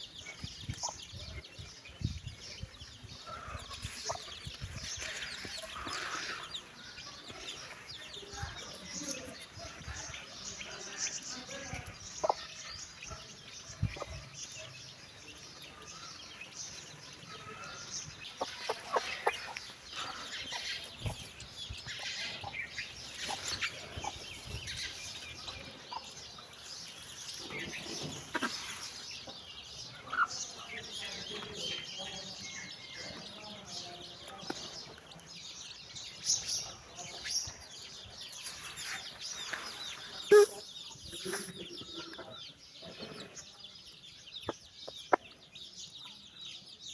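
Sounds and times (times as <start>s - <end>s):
chicks peeping: 0.0s - 46.9s
hen clucking: 11.4s - 12.6s, 17.4s - 24.5s, 27.4s - 29.4s.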